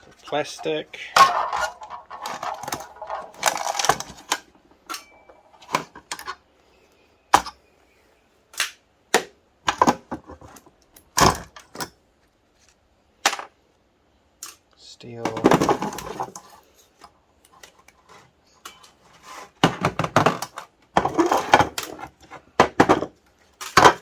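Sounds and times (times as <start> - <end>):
exercise bike parts clattering: 0.0 - 6.4.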